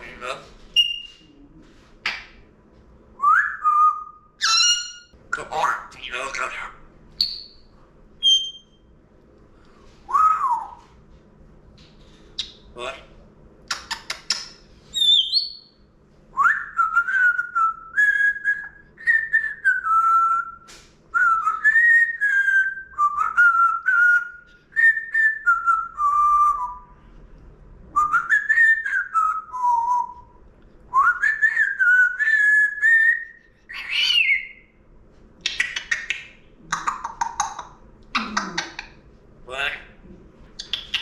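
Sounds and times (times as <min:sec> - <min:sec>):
parrot whistling: 0:00.8 - 0:01.3, 0:03.3 - 0:05.1, 0:08.2 - 0:08.8, 0:14.9 - 0:15.7, 0:31.0 - 0:34.7.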